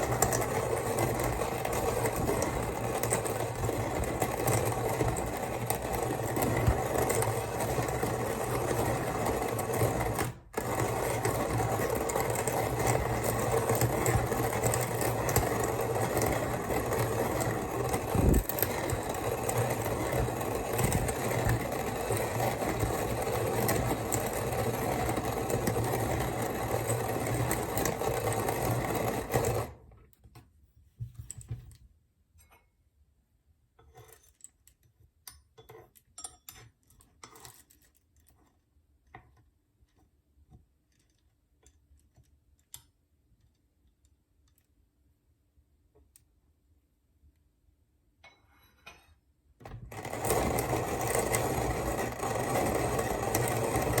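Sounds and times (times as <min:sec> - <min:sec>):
hand coffee grinder grinding: 0:00.0 - 0:29.8, 0:49.7 - 0:54.0.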